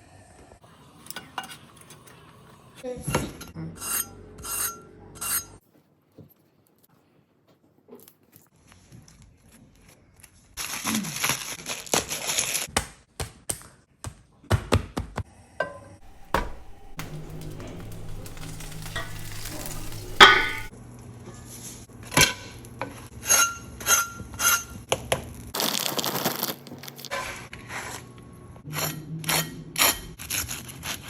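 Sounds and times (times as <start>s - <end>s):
packaging crinkling and tearing: 10.6s - 12.6s, 16.0s - 20.7s, 25.6s - 27.1s
clinks: 16.0s - 20.7s.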